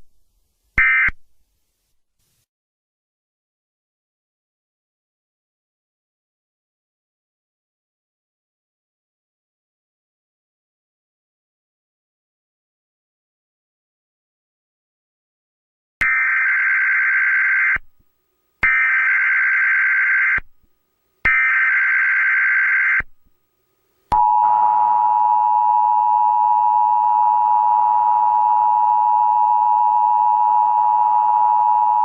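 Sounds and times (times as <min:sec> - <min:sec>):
two-tone alert signal: 0:24.2 - 0:32.0.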